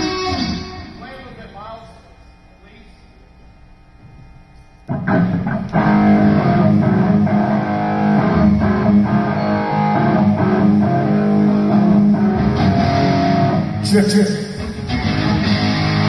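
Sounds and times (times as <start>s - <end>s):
electric guitar: 0.0s - 1.0s, 4.9s - 16.0s
bass guitar: 4.9s - 16.0s.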